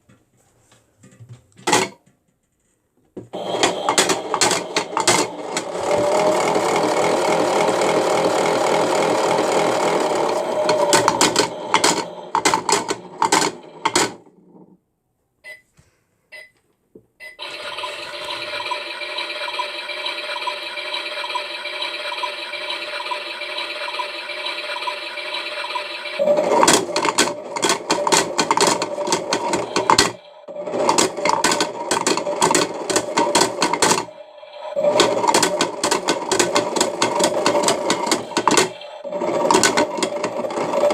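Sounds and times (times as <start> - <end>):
rapid rattling and clicking: 3.4 - 14.5, 23.6 - 40.9
toy motor whirring: 17.4 - 40.9.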